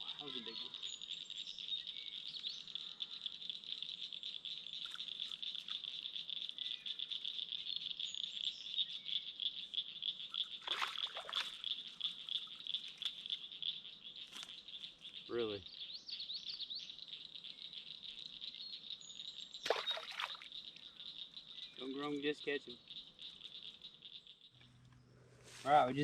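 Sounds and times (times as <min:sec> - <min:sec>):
crickets and insects trilling: 0:00.0 - 0:24.4.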